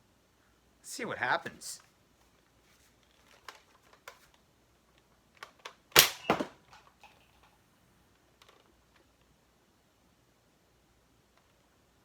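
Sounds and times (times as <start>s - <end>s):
plastic clicks: 3.0s - 7.5s, 8.4s - 9.3s
toy blaster firing pop: 6.0s - 6.6s.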